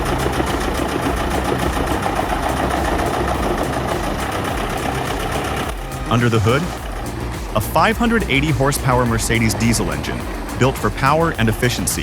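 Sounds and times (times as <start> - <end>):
wood chipper diesel engine running: 0.0 - 12.0.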